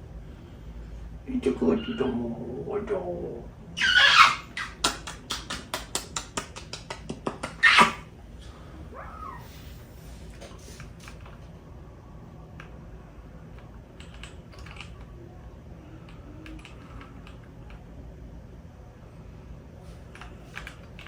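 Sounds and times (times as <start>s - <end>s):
keyboard typing clicks: 14.0s - 15.1s.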